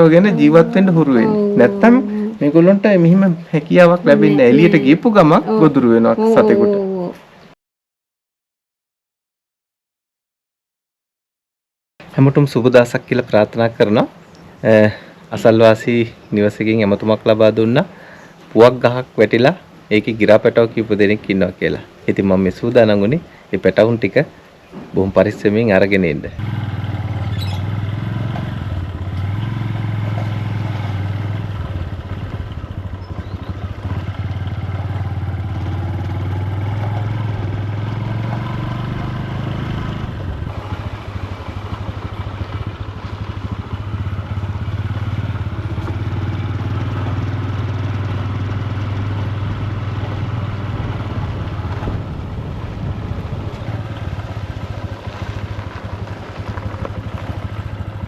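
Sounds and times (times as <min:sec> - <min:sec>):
motorcycle engine running: 0:26.4 - 0:58.0.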